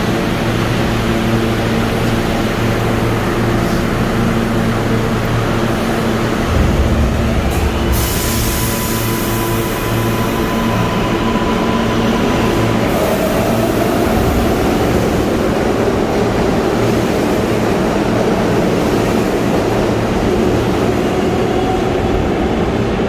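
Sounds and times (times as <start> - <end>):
subway train running on track: 0.0 - 23.0.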